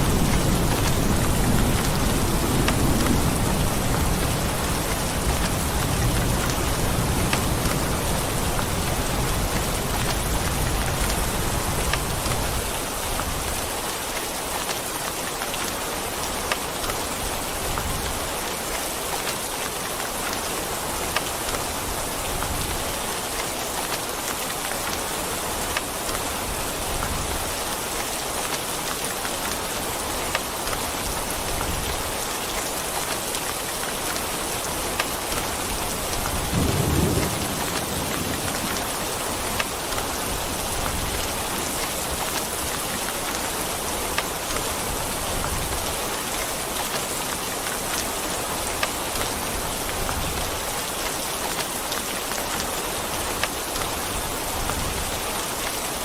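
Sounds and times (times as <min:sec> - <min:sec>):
low rumble of thunder: 0:00.0 - 0:12.7, 0:36.3 - 0:41.7
steady rain: 0:00.0 - 0:56.0.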